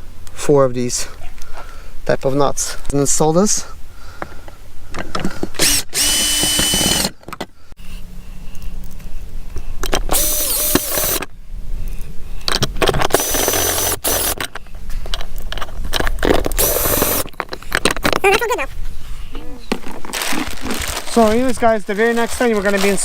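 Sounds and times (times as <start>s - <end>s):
cordless drill whining: 5.6s - 7.2s, 10.1s - 11.3s, 13.1s - 14.4s, 16.5s - 17.3s
small metal parts clinking: 12.5s - 18.4s.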